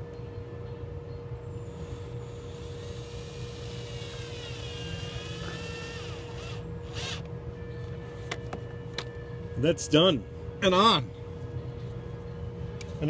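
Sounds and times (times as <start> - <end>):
steady low hum: 0.0 - 13.0
drill motor whining: 1.7 - 7.3.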